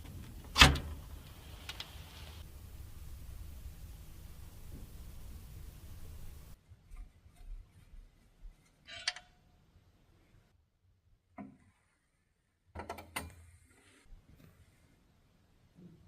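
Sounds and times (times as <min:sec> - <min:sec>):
small clicks: 0:01.2 - 0:02.4.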